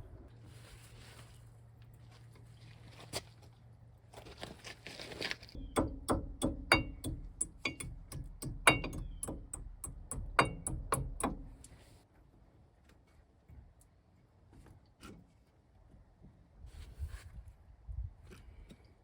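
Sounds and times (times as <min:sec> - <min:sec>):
metal-on-metal taps: 0:05.6 - 0:11.8.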